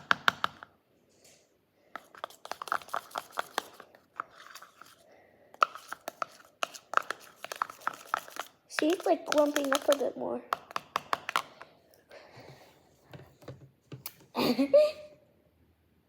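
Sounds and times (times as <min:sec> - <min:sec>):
spoon stirring sticky slime: 0:01.9 - 0:12.0.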